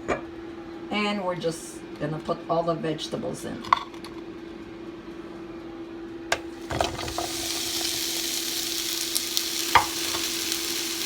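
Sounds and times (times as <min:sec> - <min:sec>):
vegetables sizzling in oil: 0:06.4 - 0:11.0
pan and utensil clatter: 0:06.7 - 0:08.0.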